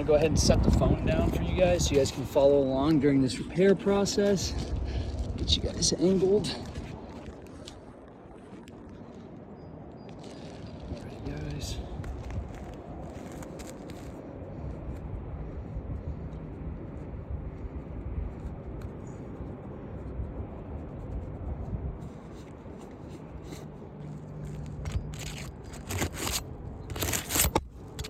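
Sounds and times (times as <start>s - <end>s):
scraping and rustling of shingle: 0.0s - 28.0s
low steady rumble: 10.6s - 28.0s.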